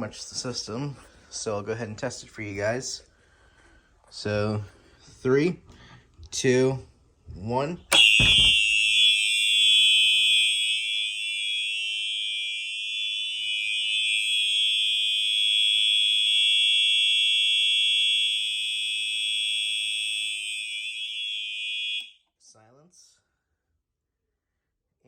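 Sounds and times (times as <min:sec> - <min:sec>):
fire alarm horn tone: 0:07.9 - 0:22.2.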